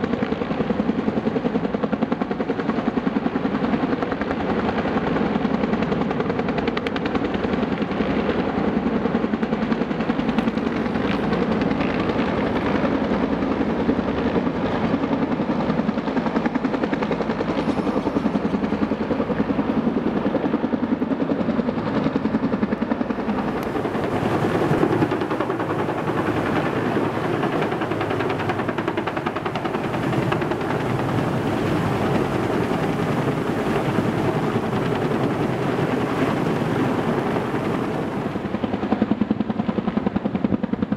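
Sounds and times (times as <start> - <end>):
helicopter rotor beating: 0.0 - 40.9.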